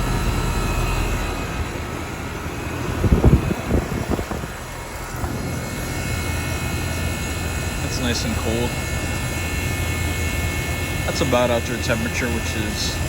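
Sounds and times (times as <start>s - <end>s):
compressor hum: 0.0s - 13.0s
fan whirring: 0.0s - 13.0s
low thumps: 2.8s - 5.9s.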